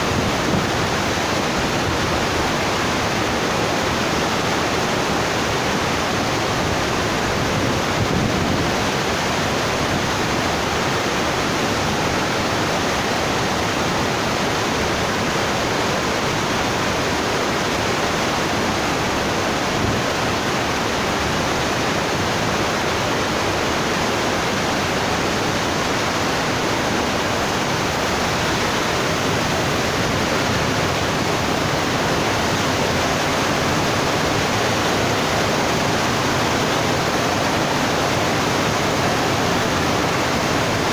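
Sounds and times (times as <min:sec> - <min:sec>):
rushing water: 0:00.0 - 0:40.9.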